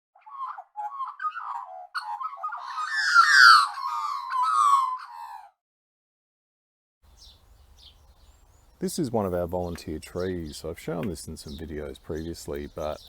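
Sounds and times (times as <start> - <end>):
bird warbling calls: 0.2 - 5.5.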